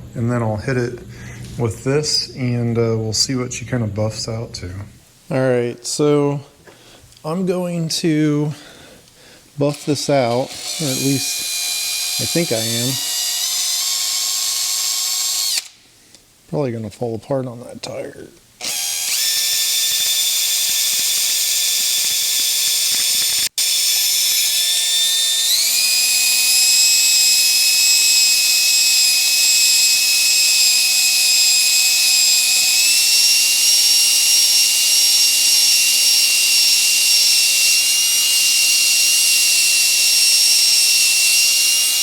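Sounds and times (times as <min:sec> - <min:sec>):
power tool motor whine: 0:10.5 - 0:15.8, 0:18.6 - 0:42.0.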